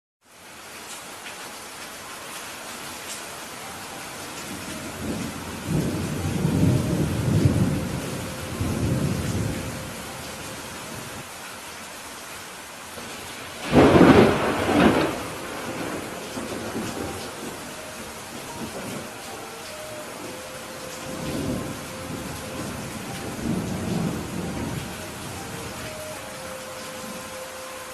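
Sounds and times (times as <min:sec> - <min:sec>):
rain on a roof: 0:00.2 - 0:27.9
rolling thunder: 0:04.6 - 0:11.2, 0:13.6 - 0:19.2, 0:20.2 - 0:25.9
sharp thunderclap: 0:13.6 - 0:17.5.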